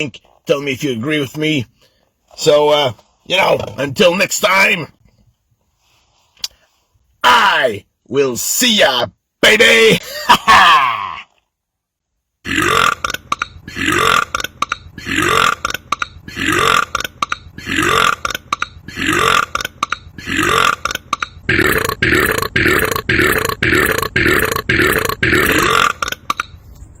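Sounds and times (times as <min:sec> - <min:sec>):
man belching: 0:12.4 - 0:26.6.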